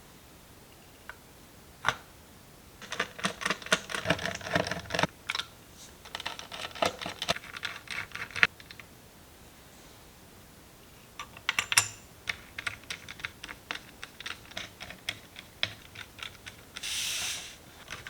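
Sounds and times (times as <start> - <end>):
rapid clicking and rattling: 2.8 - 5.4, 6.0 - 8.9, 11.2 - 16.9, 17.8 - 18.0
hardware parts clicking: 2.8 - 8.9, 11.2 - 18.0.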